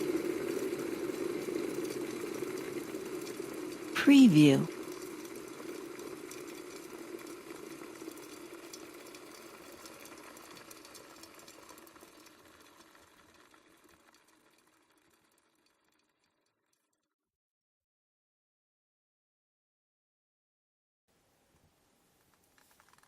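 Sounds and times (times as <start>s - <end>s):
water boiling in a kettle: 0.0s - 17.0s.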